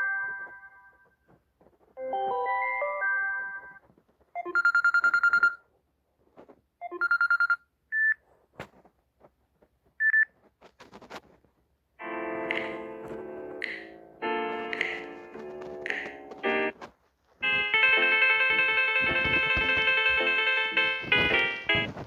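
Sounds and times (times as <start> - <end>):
melodic ringtone: 0.0 - 0.9, 2.0 - 3.8, 12.0 - 16.7, 17.4 - 22.0.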